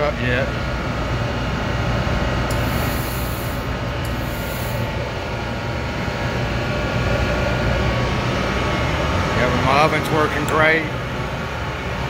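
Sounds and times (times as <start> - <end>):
blower and fans running: 0.0 - 12.0
high hiss: 2.5 - 5.0.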